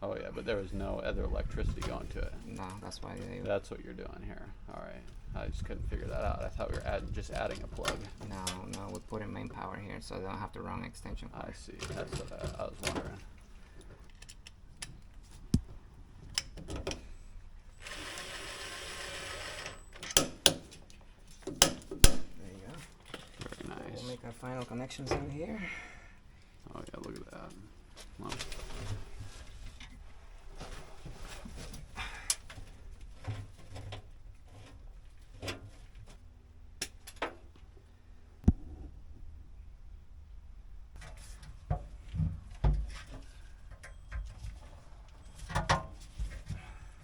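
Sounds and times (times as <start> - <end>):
small power tool motor whirring: 17.8 - 19.8
tools knocking and clicking: 21.4 - 22.4.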